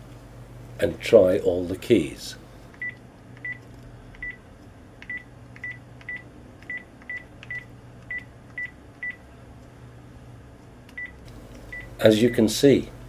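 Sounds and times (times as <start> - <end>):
phone key press beeps: 5.1 - 9.2, 11.0 - 11.9.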